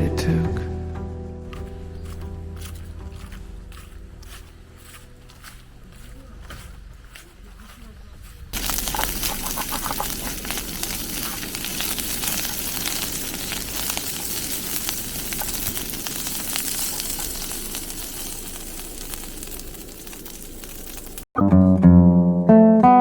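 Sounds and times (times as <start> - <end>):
crackling hiss: 8.5 - 21.3.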